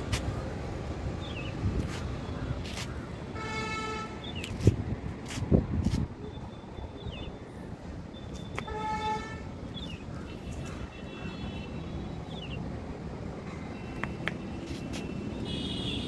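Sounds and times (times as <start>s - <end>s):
road traffic noise: 0.0s - 16.0s
vehicle horn honking: 8.6s - 9.5s, 15.4s - 16.0s.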